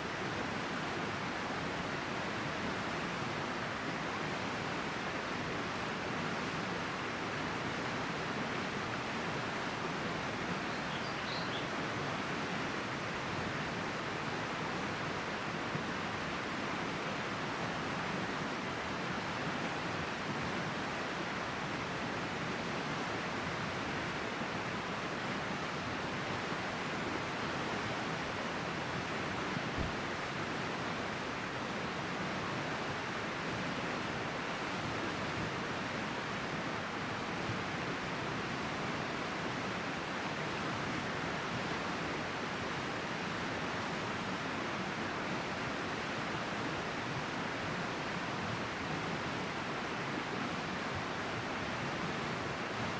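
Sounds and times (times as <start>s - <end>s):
river water flowing: 0.0s - 52.9s.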